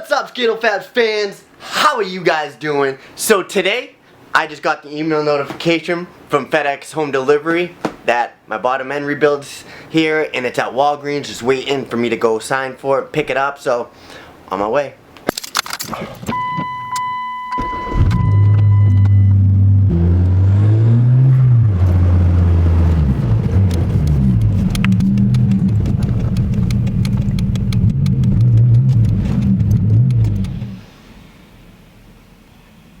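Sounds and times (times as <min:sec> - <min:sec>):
electronic tone: 0:16.3 - 0:20.0
car engine starting and revving: 0:17.6 - 0:30.8.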